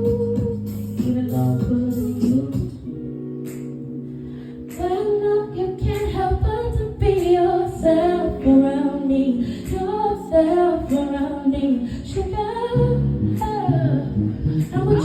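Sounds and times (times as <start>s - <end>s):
band beat: 0.0s - 2.8s
woman singing wordless melody: 0.0s - 15.0s.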